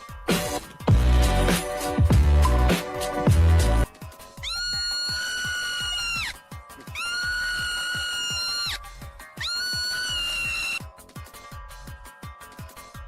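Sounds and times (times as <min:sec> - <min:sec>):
music with a fast beat: 0:00.0 - 0:13.0
high scream-like calls: 0:04.4 - 0:08.8, 0:09.4 - 0:10.8.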